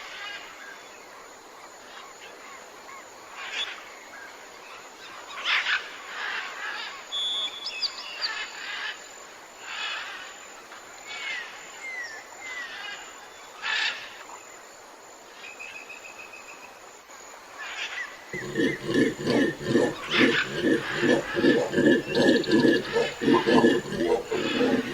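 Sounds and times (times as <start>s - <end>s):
hoarse animal calls: 18.4s - 24.9s
low animal grunts: 18.4s - 24.9s.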